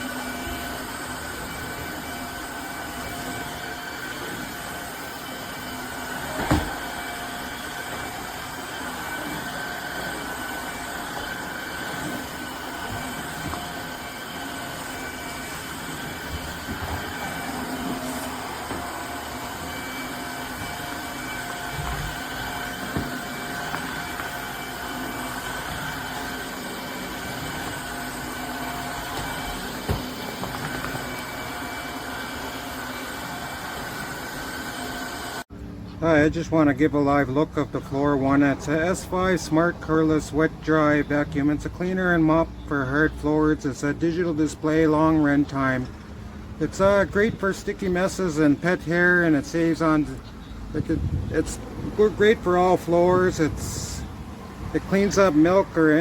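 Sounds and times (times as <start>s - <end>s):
vacuum mop motor whining: 0.0s - 35.5s, 45.1s - 56.0s.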